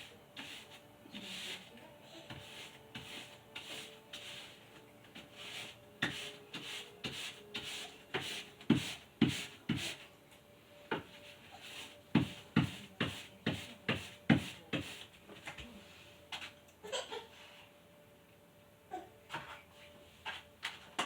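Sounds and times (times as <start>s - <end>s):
paintbrush swishing on a wall: 0.0s - 10.1s, 10.9s - 16.5s.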